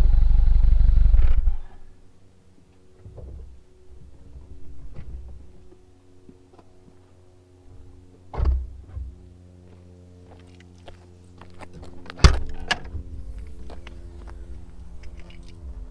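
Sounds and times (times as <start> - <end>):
low rumble: 0.0 - 1.9, 12.3 - 15.9
steady hum: 0.0 - 2.3, 10.0 - 15.9
heavy thunks: 12.2 - 14.3.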